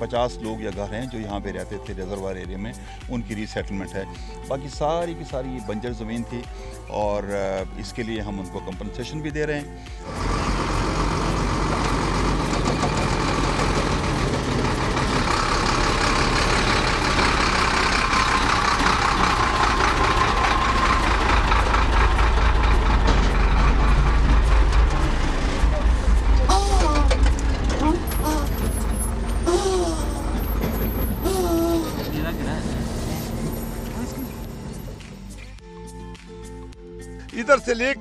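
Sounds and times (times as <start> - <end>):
man's voice: 0.0 - 10.0, 37.3 - 38.0
heavy diesel engines rumbling: 10.0 - 35.6.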